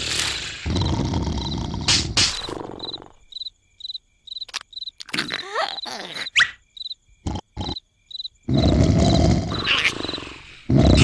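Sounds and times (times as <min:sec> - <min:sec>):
crickets chirping: 0:00.0 - 0:11.0
loud snore: 0:00.6 - 0:02.1, 0:08.5 - 0:11.0
cartoon squeaks and glides: 0:05.0 - 0:06.6.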